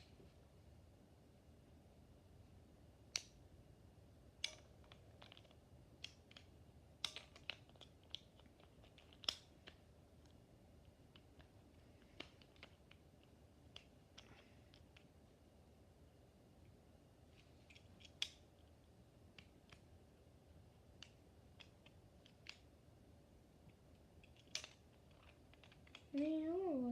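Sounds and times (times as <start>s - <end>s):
plastic toy parts clicking: 4.4s - 10.4s, 24.2s - 26.2s.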